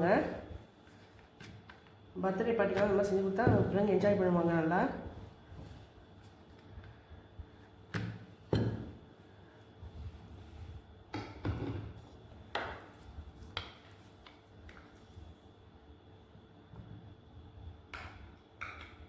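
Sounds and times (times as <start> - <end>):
knocks on kitchen worktop: 8.0 - 8.9, 11.2 - 11.9.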